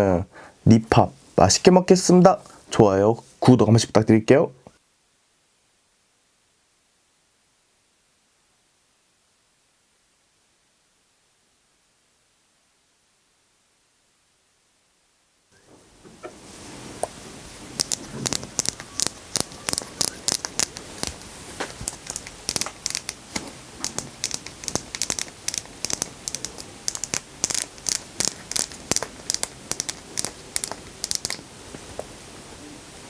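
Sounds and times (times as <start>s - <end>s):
sharp crackling clicks: 17.0s - 32.1s
plastic packaging crinkling and tearing: 17.6s - 31.5s.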